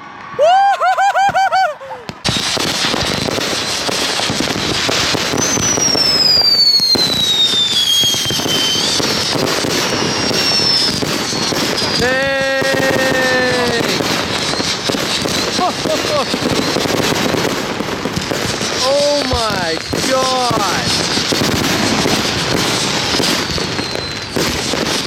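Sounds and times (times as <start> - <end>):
firework whistle falling in pitch: 0.0 - 2.6, 3.4 - 16.9, 21.8 - 25.0
fireworks crackling: 0.0 - 25.0.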